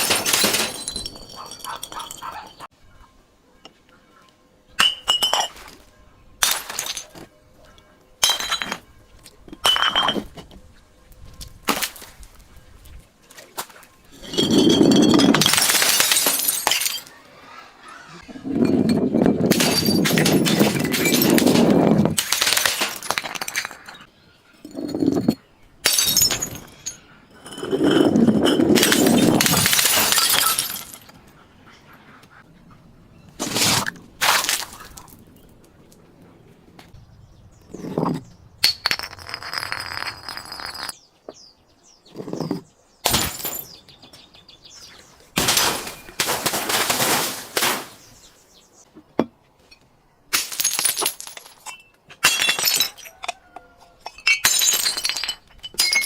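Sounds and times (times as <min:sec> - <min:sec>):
glass bottles breaking: 0:00.0 - 0:02.7, 0:04.8 - 0:05.8, 0:06.4 - 0:07.3, 0:08.2 - 0:08.9, 0:09.5 - 0:10.3, 0:14.2 - 0:17.1, 0:18.6 - 0:31.2, 0:43.0 - 0:43.8, 0:45.4 - 0:48.1, 0:50.3 - 0:53.4, 0:54.0 - 0:56.0
glass crunching and shattering: 0:00.0 - 0:02.7, 0:06.4 - 0:07.3, 0:08.2 - 0:08.9, 0:14.1 - 0:17.1, 0:18.6 - 0:24.1, 0:24.7 - 0:31.2, 0:33.4 - 0:35.2, 0:43.0 - 0:43.8, 0:45.4 - 0:48.1, 0:50.3 - 0:56.0.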